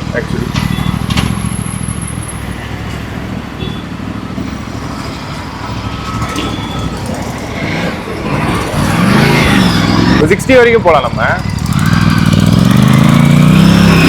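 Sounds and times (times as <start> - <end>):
motorcycle engine running: 5.5 - 14.0.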